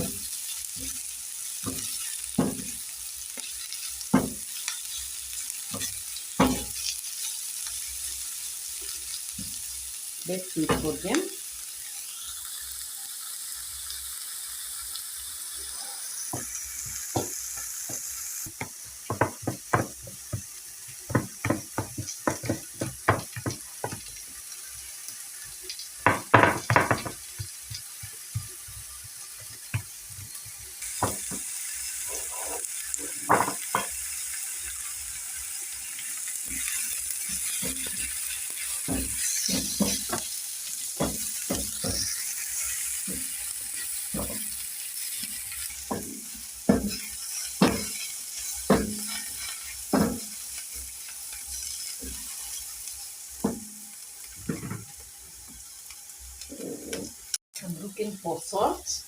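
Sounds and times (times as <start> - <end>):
vegetables sizzling in a pot: 0.0 - 59.0
spoon knocking and scraping pot: 17.1 - 24.2, 26.0 - 31.5, 32.1 - 34.0, 38.8 - 40.4, 41.0 - 44.6, 45.9 - 50.4, 54.4 - 55.0.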